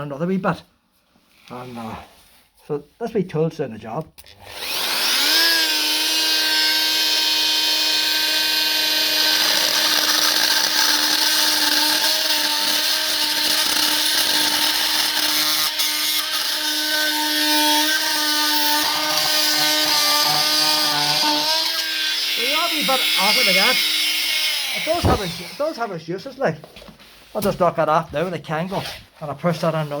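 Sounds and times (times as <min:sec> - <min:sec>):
power tool cutting metal: 0:04.4 - 0:25.9.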